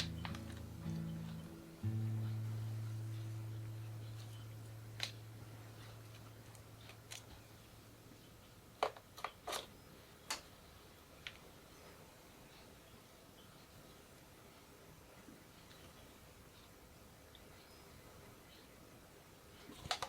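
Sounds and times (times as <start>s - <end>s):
low held music note: 0.0s - 6.8s.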